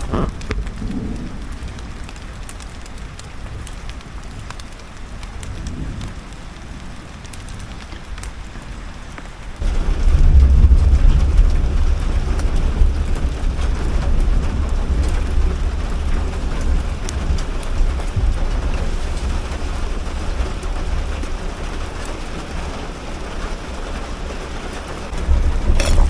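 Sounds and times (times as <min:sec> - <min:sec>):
deep rumble: 0:00.0 - 0:02.4, 0:09.6 - 0:21.5, 0:25.1 - 0:26.0
heavy rain on metal: 0:00.0 - 0:26.0.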